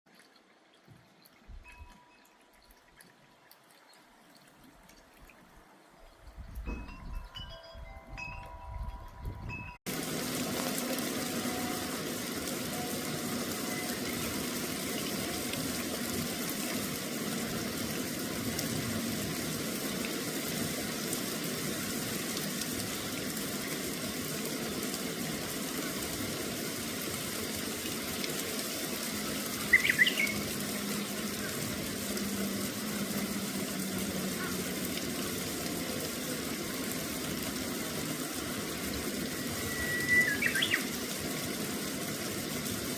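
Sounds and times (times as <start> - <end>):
flowing water rushing: 0.1 - 42.9
wind chime tones: 1.6 - 2.4, 6.3 - 9.8.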